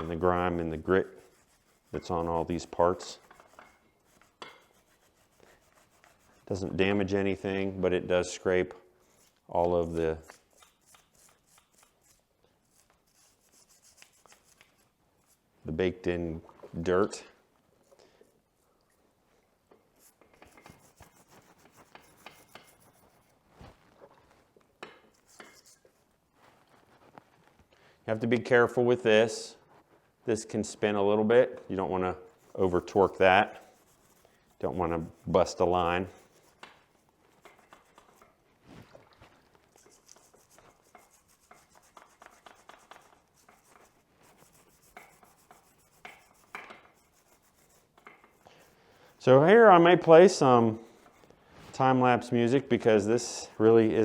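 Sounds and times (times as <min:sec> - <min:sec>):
wire brush scraping metal: 0:00.0 - 0:06.6, 0:20.0 - 0:23.4, 0:25.1 - 0:26.0, 0:32.3 - 0:38.4, 0:39.7 - 0:49.8.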